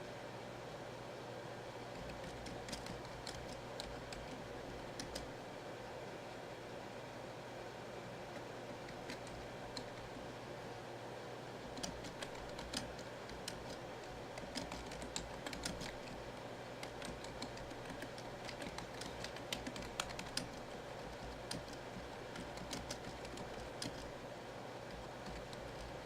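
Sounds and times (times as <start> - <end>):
low steady hum: 0.0 - 26.0
keyboard keystroke clicks: 1.9 - 5.3, 11.8 - 16.2, 16.8 - 24.1.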